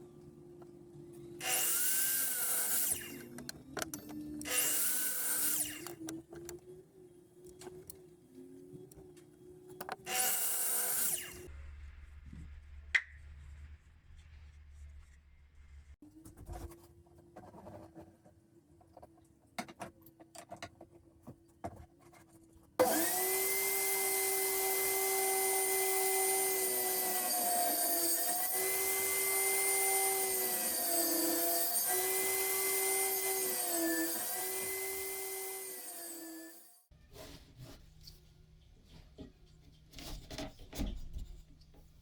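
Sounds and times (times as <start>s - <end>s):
electric woodworking power tool: 1.4s - 3.5s, 4.4s - 6.2s, 10.0s - 11.5s, 22.8s - 36.8s.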